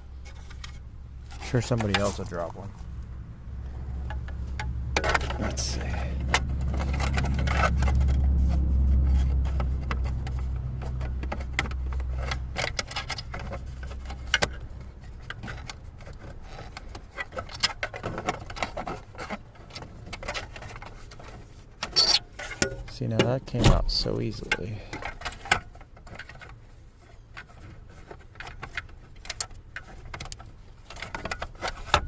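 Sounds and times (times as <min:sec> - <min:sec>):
low hum: 0:00.0 - 0:16.1.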